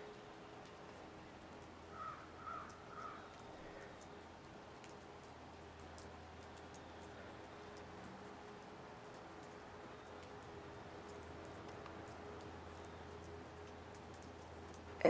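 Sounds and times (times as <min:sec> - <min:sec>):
bird calling: 0:01.9 - 0:03.8.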